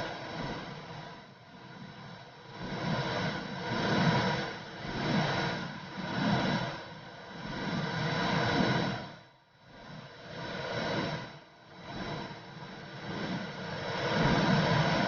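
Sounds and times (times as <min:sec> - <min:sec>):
muffled pulsing whooshing: 0:02.5 - 0:15.0.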